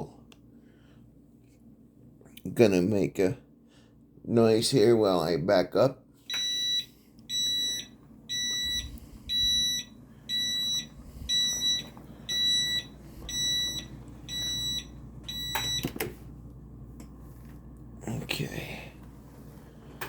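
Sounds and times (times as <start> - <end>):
high-pitched reverse warning beeps: 6.3 - 15.9.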